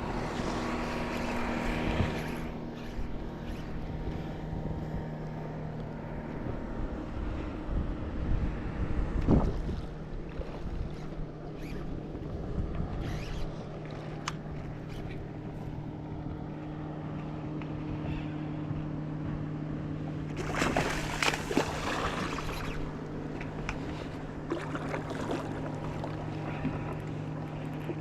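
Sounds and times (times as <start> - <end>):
boat motor humming: 0.0 - 28.0.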